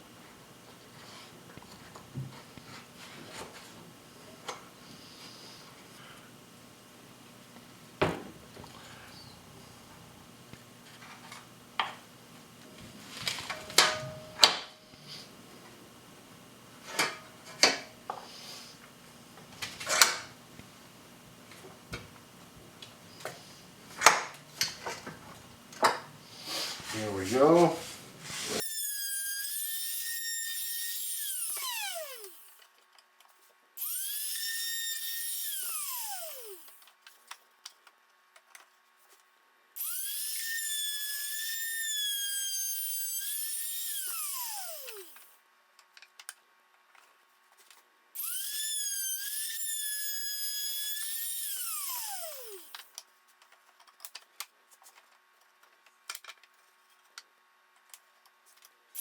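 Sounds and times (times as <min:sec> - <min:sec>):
electric power tool whining: 0:28.5 - 0:32.6, 0:33.8 - 0:36.8, 0:39.8 - 0:45.3, 0:48.2 - 0:52.8.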